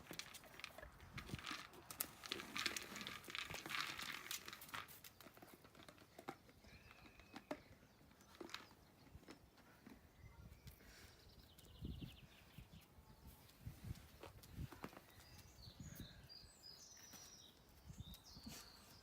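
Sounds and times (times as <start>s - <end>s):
treats rattling inside plastic toy: 0.0s - 9.4s.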